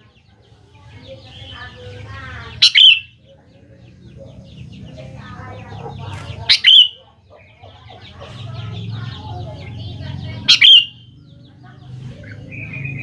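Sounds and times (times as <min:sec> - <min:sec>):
bird chatter: 0:00.0 - 0:13.0
sharp bird call: 0:02.6 - 0:03.2, 0:06.5 - 0:07.0, 0:10.5 - 0:11.1.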